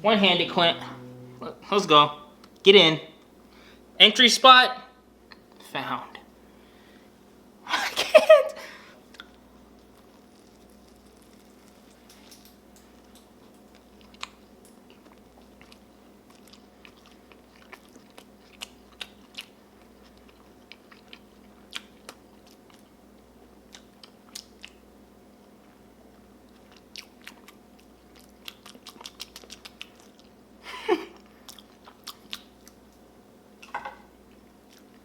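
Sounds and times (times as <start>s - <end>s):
faint steady hum: 0.0s - 35.0s
crunchy chewing: 9.2s - 23.0s, 26.5s - 30.4s, 31.2s - 32.9s.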